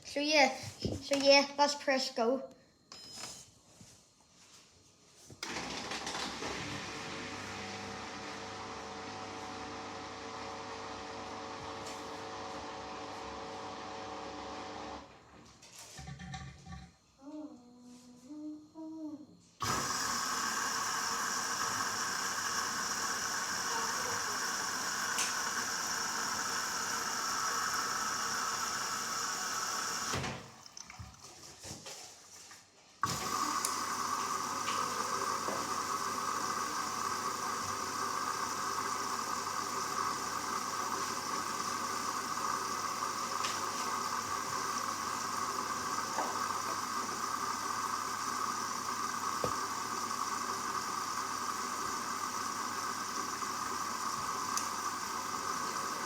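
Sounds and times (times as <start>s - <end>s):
washing machine filling with water: 5.4s - 15.2s, 19.6s - 31.6s, 33.0s - 56.0s.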